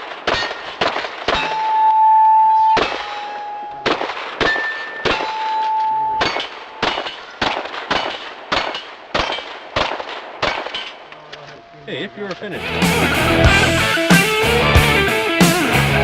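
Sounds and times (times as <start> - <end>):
pistol shots: 0.0 - 2.0, 2.7 - 11.1
steel targets ringing: 0.0 - 9.6.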